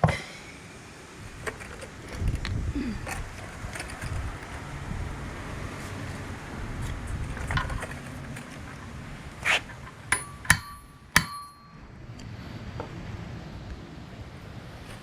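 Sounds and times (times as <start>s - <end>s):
metal scraping: 1.3s - 2.4s, 3.0s - 11.5s
hammer blows on metal: 10.1s - 11.9s.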